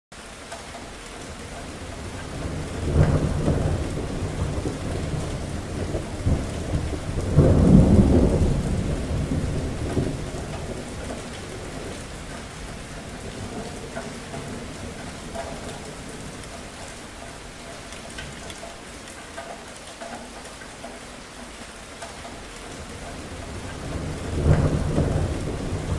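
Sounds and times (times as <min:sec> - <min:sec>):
steady rain: 0:00.1 - 0:25.9
thunder rumbling: 0:01.3 - 0:17.6, 0:22.7 - 0:25.9.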